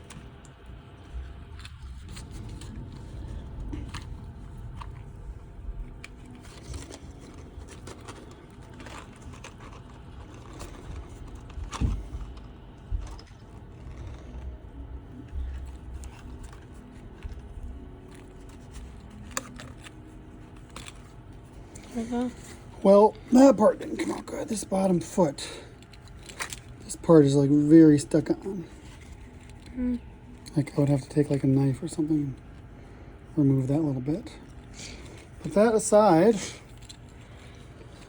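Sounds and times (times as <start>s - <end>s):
plastic clicks and scrapes: 6.0s - 14.5s, 15.2s - 21.9s.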